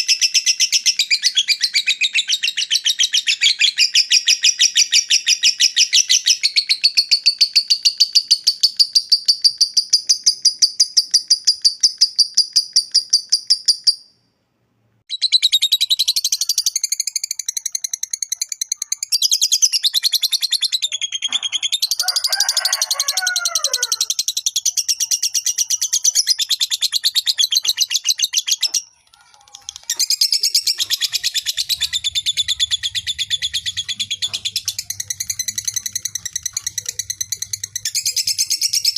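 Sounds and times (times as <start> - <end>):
lovebird chattering: 24.0 - 38.9.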